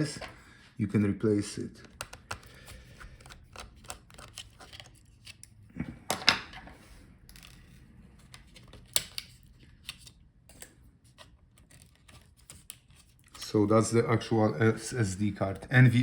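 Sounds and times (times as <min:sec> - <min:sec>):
small clicks of laptop parts: 0:01.8 - 0:02.6.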